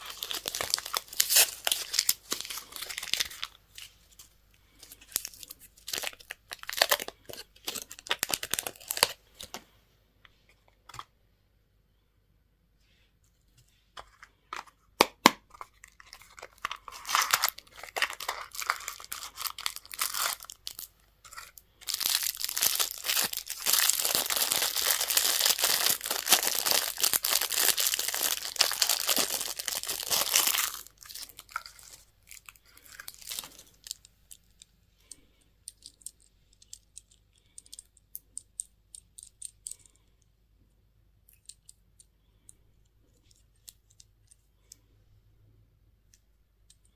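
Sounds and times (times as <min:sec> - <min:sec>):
candy wrapper tearing and crinkling: 0:00.0 - 0:09.6, 0:15.2 - 0:40.0
wrapper clicks and rustles: 0:15.5 - 0:39.9.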